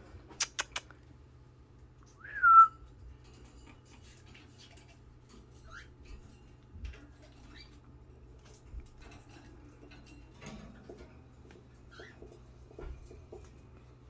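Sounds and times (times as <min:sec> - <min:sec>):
sharp clicks: 0:00.4 - 0:00.9.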